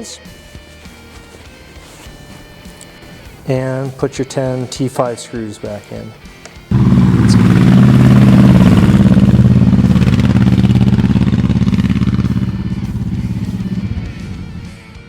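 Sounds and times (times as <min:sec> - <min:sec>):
motorcycle engine running: 0:06.7 - 0:14.9.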